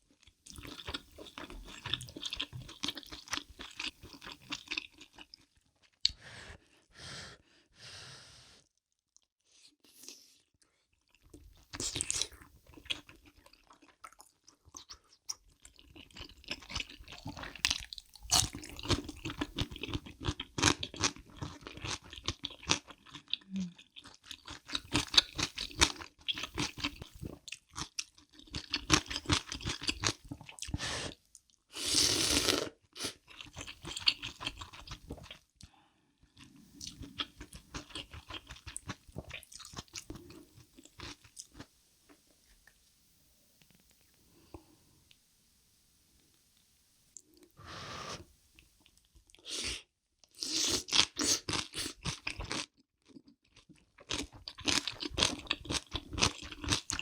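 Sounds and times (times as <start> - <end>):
crunchy chewing: 15.6 - 30.8, 36.4 - 41.7, 50.3 - 57.0.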